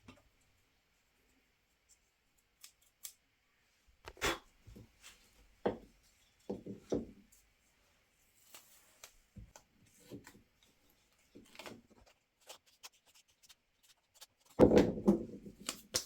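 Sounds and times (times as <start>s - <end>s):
rustling knocks with dull thuds: 14.6s - 15.6s.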